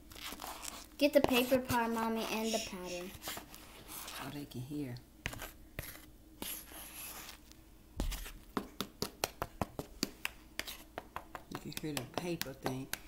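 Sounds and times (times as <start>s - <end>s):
brittle sheets crinkling: 0.0s - 0.9s.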